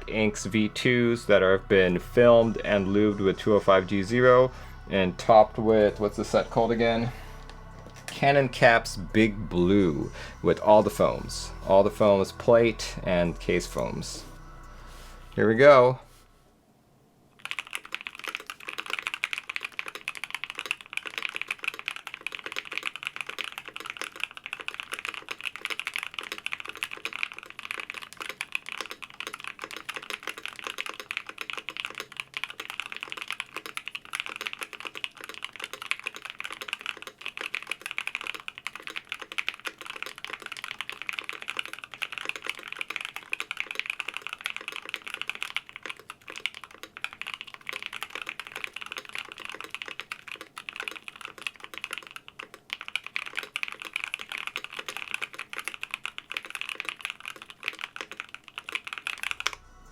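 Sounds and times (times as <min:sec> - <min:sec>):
fast typing on mechanical keyboard: 0:17.4 - 0:59.6.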